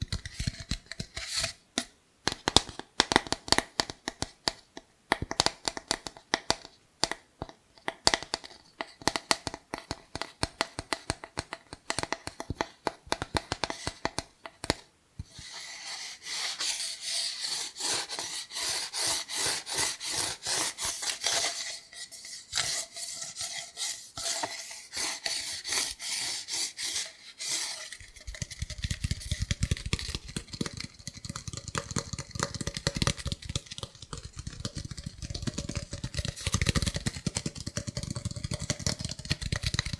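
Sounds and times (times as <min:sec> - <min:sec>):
scratching and rubbing cardboard: 0:15.3 - 0:39.9
fingertip tapping on cardboard: 0:28.4 - 0:39.9.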